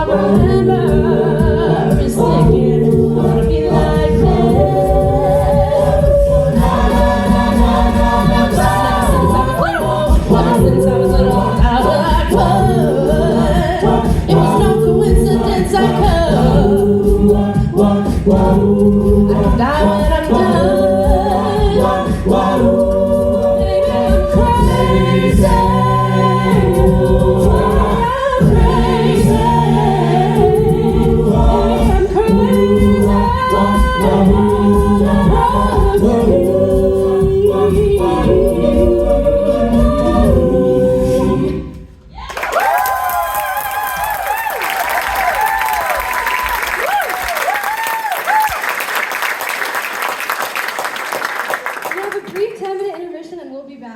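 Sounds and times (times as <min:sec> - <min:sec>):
choir singing in harmony: 0:00.0 - 0:42.2.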